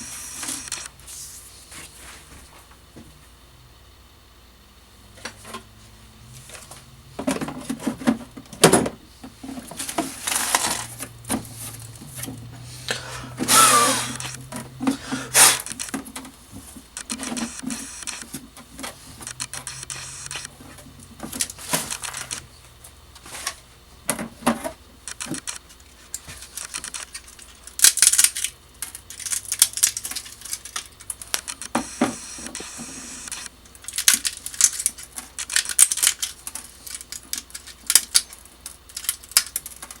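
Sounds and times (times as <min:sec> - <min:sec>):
plastic clicks and cracks: 0:33.7 - 0:40.0.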